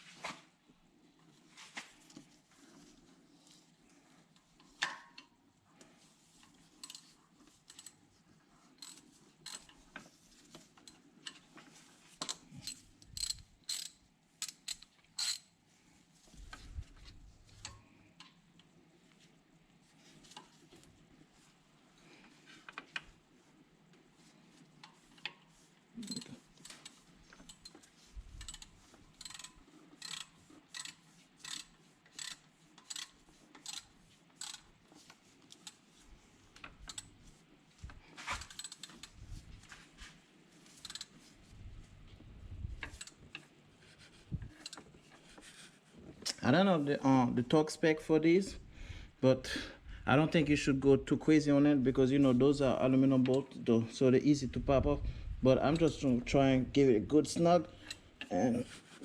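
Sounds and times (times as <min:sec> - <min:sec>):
ratchet wrench clicking: 0:07.7 - 0:08.0, 0:08.8 - 0:09.7, 0:12.6 - 0:15.5, 0:26.6 - 0:34.6, 0:36.9 - 0:37.1, 0:38.4 - 0:39.1, 0:40.8 - 0:41.1.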